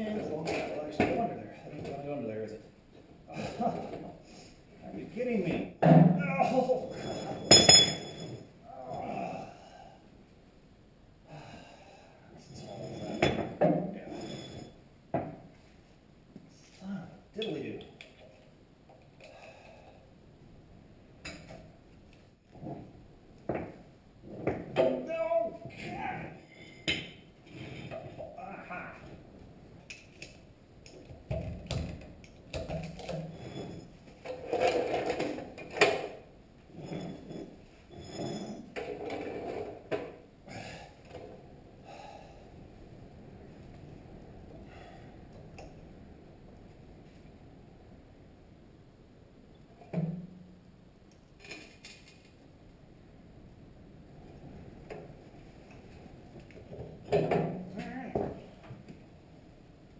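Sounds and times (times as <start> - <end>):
metal scraping: 6.7 - 8.5, 12.6 - 14.8, 36.7 - 39.4
metal knocks and clanks: 7.1 - 8.3.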